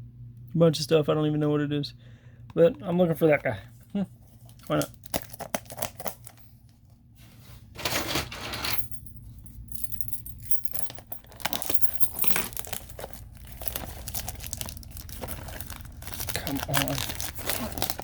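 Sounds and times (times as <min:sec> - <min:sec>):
packaging crinkling and tearing: 0:04.4 - 0:06.5, 0:11.2 - 0:18.0.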